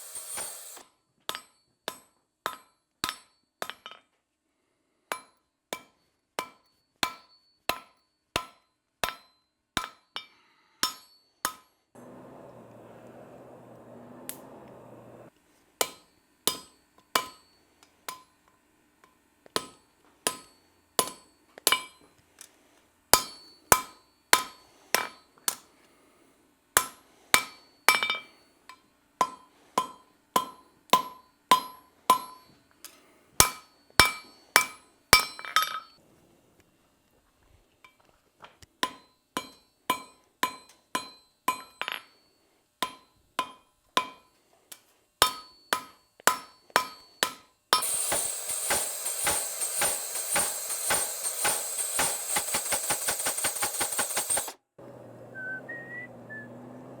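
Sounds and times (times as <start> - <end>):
hammer striking steel on anvil: 0.0 - 4.0, 5.1 - 11.7, 15.8 - 22.1, 23.1 - 25.7, 26.8 - 36.0, 38.8 - 42.2, 42.8 - 54.6.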